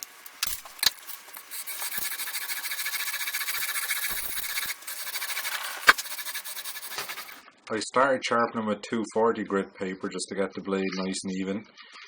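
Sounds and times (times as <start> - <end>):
plane iron rasping on sandpaper: 1.4 - 7.4.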